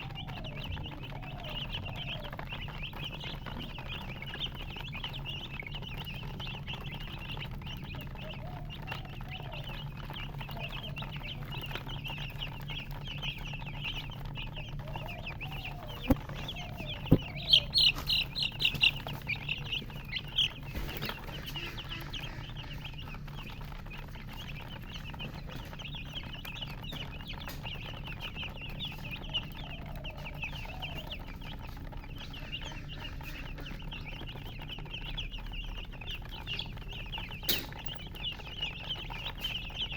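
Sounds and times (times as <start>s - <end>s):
chicks peeping: 0.0s - 39.9s
sharp knocks: 17.0s - 18.2s, 37.5s - 38.1s.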